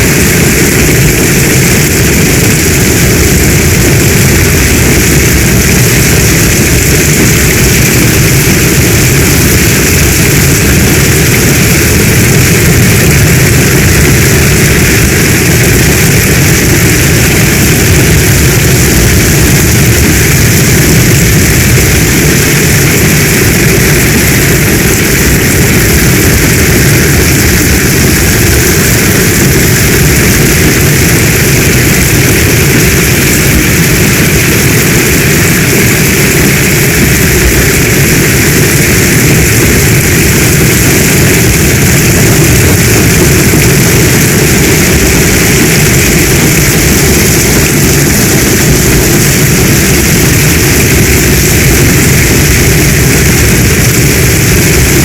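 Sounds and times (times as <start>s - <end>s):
deep rumble: 0.0s - 55.0s
heavy storm rain: 0.0s - 55.0s.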